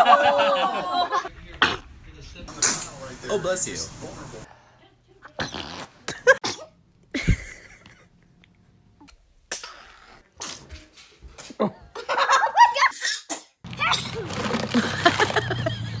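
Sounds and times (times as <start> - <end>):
baby sneezing: 12.9 - 14.1.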